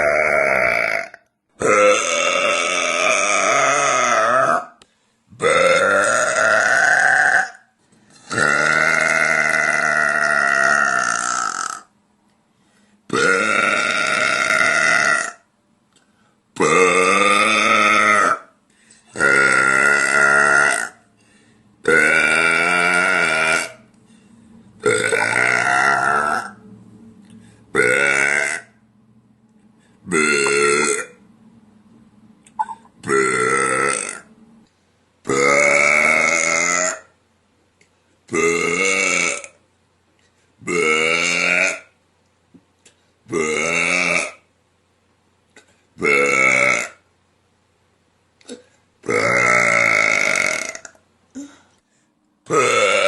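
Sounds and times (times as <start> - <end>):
woman belching: 0.0 - 4.7, 5.4 - 7.6, 8.3 - 11.9, 13.1 - 15.4, 19.2 - 21.0, 24.8 - 26.6, 27.8 - 28.8, 30.1 - 31.1, 32.6 - 34.3, 35.3 - 37.1, 38.4 - 39.6, 43.3 - 44.4, 46.0 - 47.0, 48.4 - 51.0, 52.5 - 53.0.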